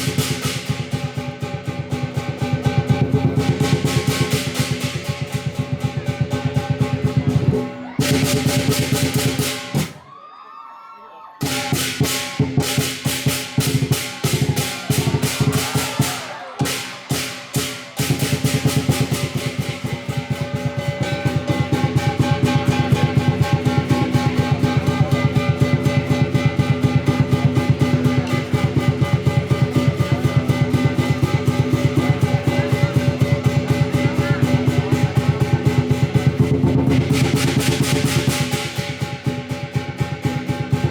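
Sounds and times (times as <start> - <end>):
big drum beating: 0.0 - 10.0, 11.4 - 40.9
cymbals crashing: 0.0 - 10.0, 11.4 - 40.9
gong ringing: 14.3 - 34.1.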